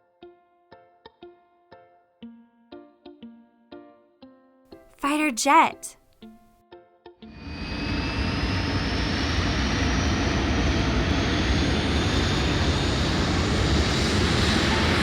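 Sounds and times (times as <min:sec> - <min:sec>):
jet engine running: 0:07.5 - 0:15.0.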